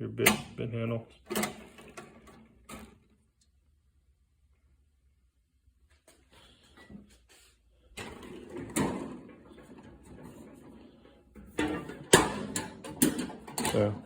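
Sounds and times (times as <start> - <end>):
clicks and knocks: 1.2 - 3.2, 11.4 - 14.0
drawers sliding shut: 8.0 - 10.8.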